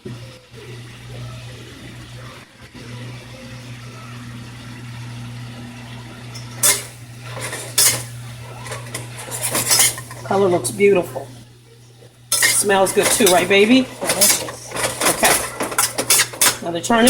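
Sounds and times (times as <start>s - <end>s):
utensil clattering against pan: 6.6s - 10.3s, 12.3s - 17.0s.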